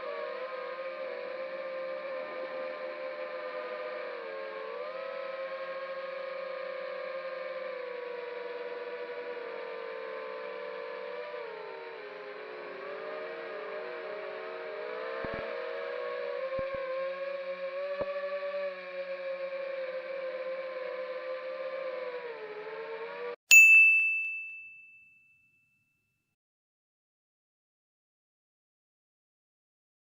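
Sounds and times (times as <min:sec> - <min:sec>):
quadcopter motors whining: 0:00.0 - 0:23.4.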